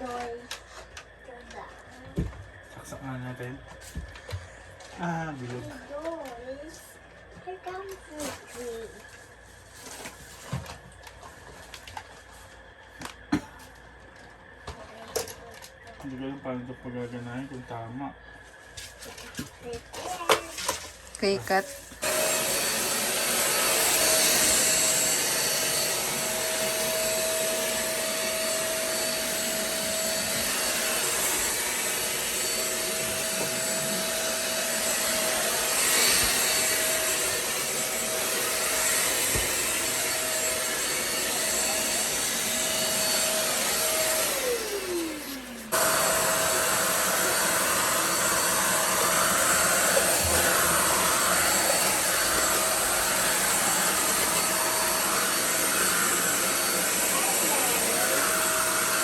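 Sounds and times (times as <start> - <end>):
vacuum cleaner motor whine: 0.0 - 59.0
vacuum motor winding down: 21.5 - 59.0.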